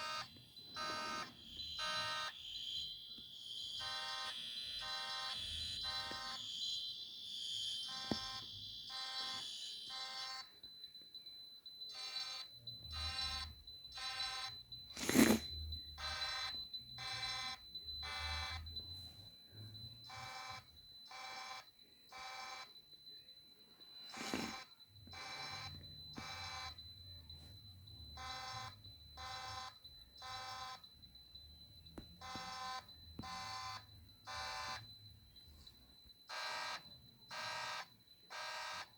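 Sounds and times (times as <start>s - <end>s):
fire alarm horns pulsing: 0.0s - 22.9s, 23.8s - 38.9s.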